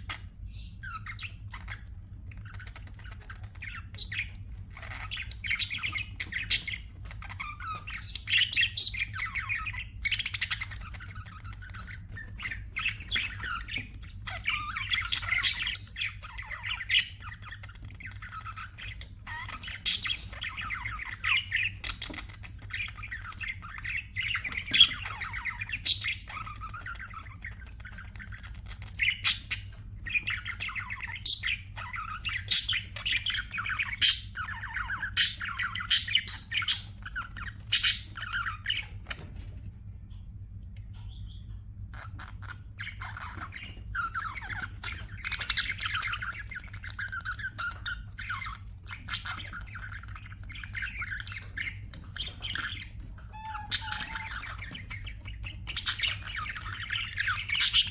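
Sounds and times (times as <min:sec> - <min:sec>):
budgerigars chirping: 0:00.0 - 0:39.6, 0:40.9 - 0:57.9
budgerigar squawks: 0:53.4 - 0:54.8.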